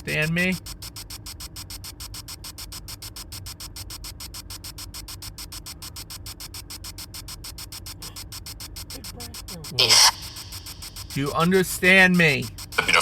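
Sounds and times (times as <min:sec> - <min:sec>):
choppy radio static: 0:00.0 - 0:00.8, 0:01.7 - 0:13.0
steady low rumble: 0:07.0 - 0:13.0.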